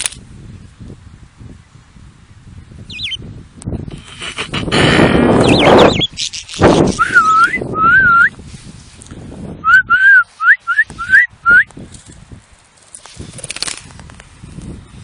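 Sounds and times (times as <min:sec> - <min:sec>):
person whistling: 0:07.0 - 0:08.4, 0:09.6 - 0:11.7.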